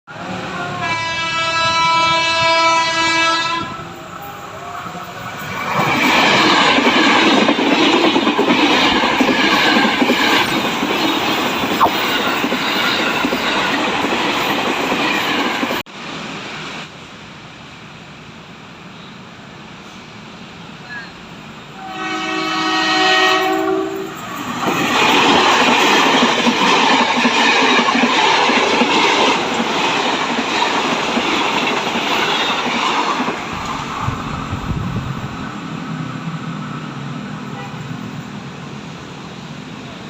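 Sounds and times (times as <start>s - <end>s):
train horn: 0.2s - 5.0s, 20.8s - 24.2s, 37.4s - 38.0s
train wheels clattering on rails: 5.1s - 15.8s, 23.4s - 34.6s.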